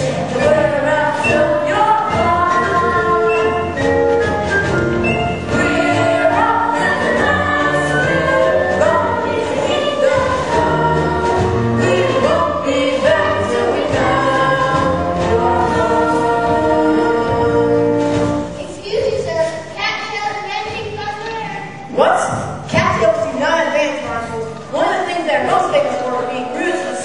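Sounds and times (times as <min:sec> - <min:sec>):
choir singing: 0:00.0 - 0:18.5.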